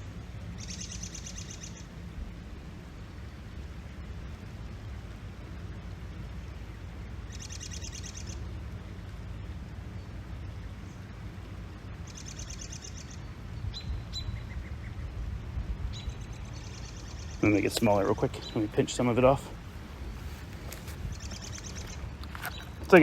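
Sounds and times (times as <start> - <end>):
low outdoor rumble: 0.0 - 23.0
songbird trills: 0.5 - 2.0, 6.5 - 8.6, 12.0 - 15.2, 15.9 - 23.0
bird chips: 19.9 - 23.0.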